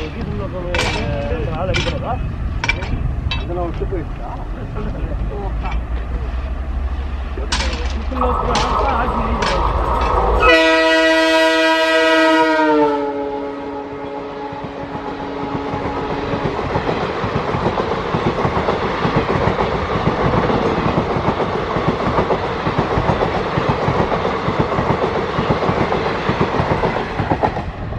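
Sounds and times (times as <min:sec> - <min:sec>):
train wheels clattering: 0:00.0 - 0:06.5, 0:07.3 - 0:11.6, 0:14.6 - 0:27.7
locomotive horn: 0:08.4 - 0:16.2.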